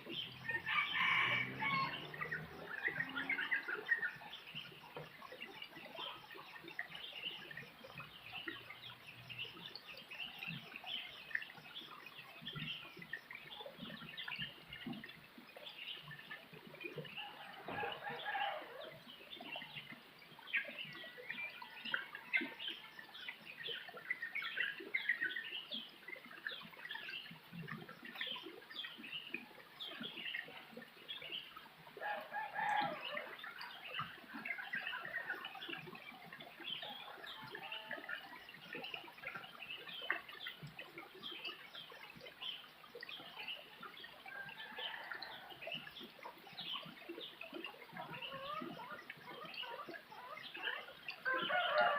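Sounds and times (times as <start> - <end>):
rooster crowing: 0.7 - 2.1
small birds chirping: 1.7 - 18.0, 33.1 - 51.9
chickens clucking: 48.1 - 50.5.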